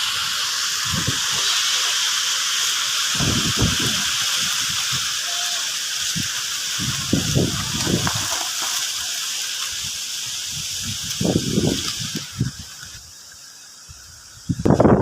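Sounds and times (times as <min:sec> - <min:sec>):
strong wind hissing: 0:00.0 - 0:15.0
wind gusts buffeting microphone: 0:00.2 - 0:01.5, 0:03.1 - 0:05.2, 0:06.0 - 0:09.0, 0:09.7 - 0:13.1, 0:13.9 - 0:15.0.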